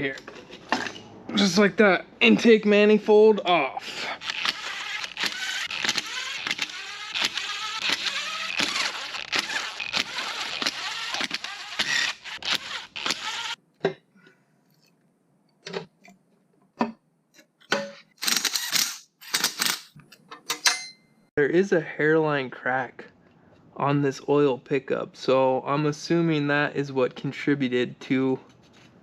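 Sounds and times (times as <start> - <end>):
tools and metal parts clattering: 20.1 - 21.1.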